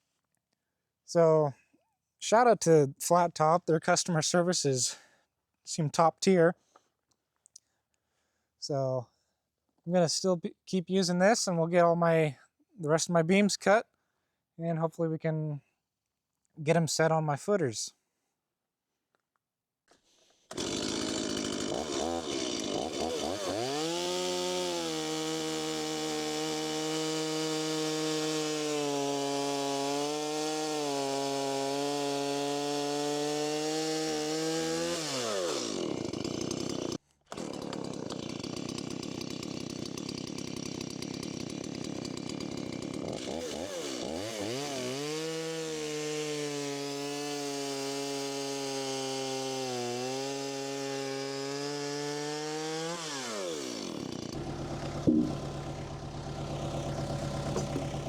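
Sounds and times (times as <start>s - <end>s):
chainsaw cutting timber: 20.4s - 58.0s.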